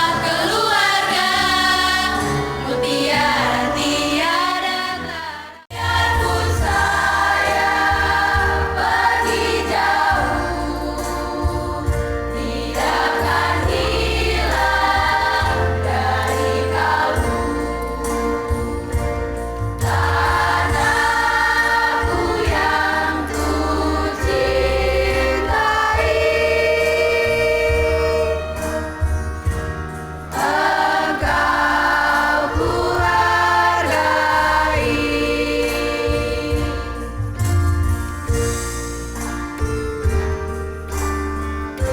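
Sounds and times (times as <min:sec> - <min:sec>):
choir singing: 0:00.0 - 0:29.6, 0:30.2 - 0:37.4
low instrumental accompaniment: 0:05.7 - 0:41.9.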